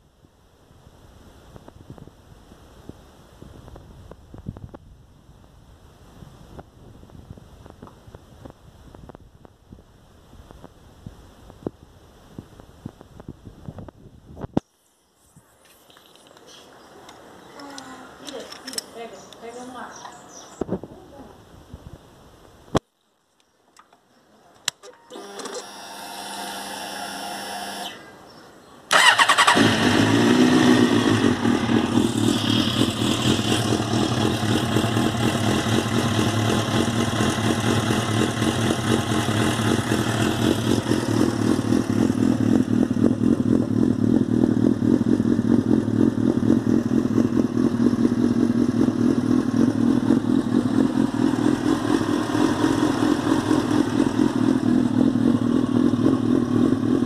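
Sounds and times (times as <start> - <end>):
motorcycle engine starting and idling: 24.7 - 28.1, 28.9 - 57.0.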